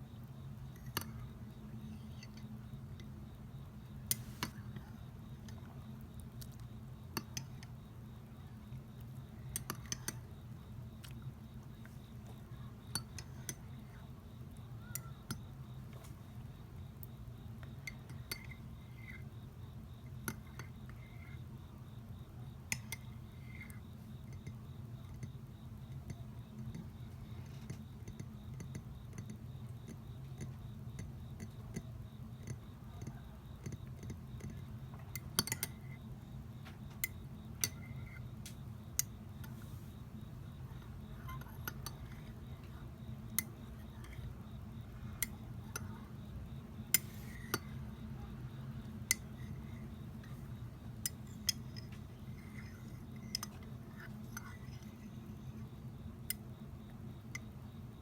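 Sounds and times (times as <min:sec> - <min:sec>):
steady low hum: 0:00.0 - 0:58.0
metal spoon clinking glass: 0:35.4 - 0:35.7.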